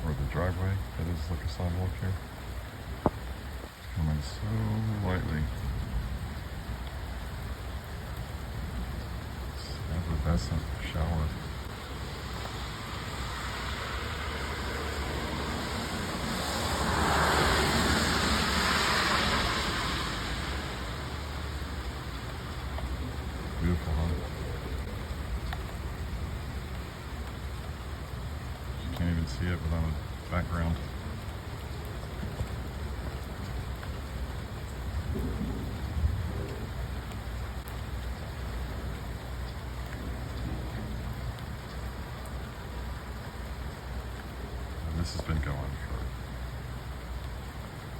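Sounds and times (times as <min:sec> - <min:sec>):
light rain hissing: 0:00.0 - 0:47.9
raindrop ticks: 0:00.0 - 0:47.9
car passing by: 0:11.6 - 0:24.2.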